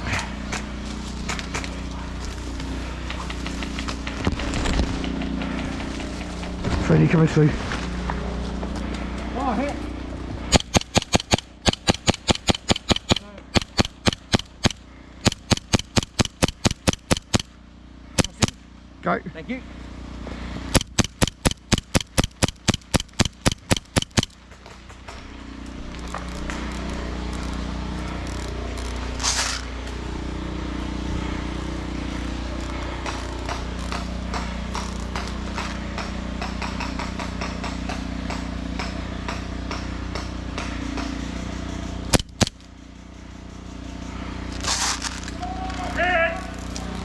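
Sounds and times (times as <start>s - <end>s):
airsoft gun shots: 10.5s - 17.5s, 18.2s - 18.6s, 20.7s - 24.4s.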